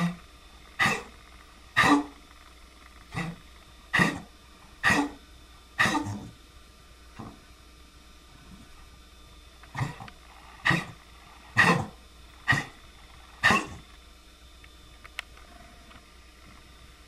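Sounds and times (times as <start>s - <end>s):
pet animal coughing: 0.8s - 1.1s, 1.8s - 2.2s, 3.1s - 3.4s, 4.0s - 5.2s, 5.8s - 6.3s, 9.8s - 11.0s, 11.6s - 12.8s, 13.4s - 13.8s.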